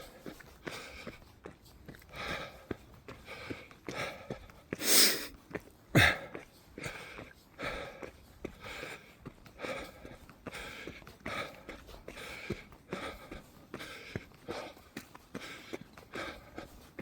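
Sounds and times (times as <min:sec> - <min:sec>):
person breathing hard: 0:00.0 - 0:17.0
sharp snort: 0:04.8 - 0:05.3.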